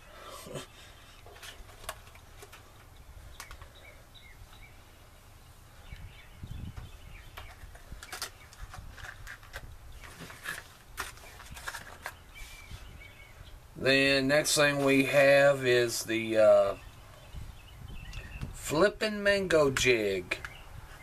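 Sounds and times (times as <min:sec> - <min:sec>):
faint bird chirps: 0:02.6 - 0:08.7, 0:12.0 - 0:13.6, 0:16.7 - 0:18.6, 0:20.3 - 0:21.0.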